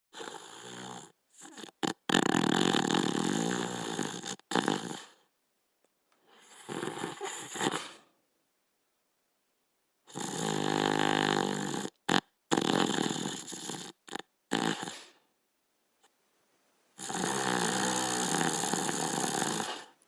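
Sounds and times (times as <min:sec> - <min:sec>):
dog snoring: 0:00.1 - 0:05.3, 0:06.3 - 0:08.1, 0:10.0 - 0:15.2, 0:17.0 - 0:20.0.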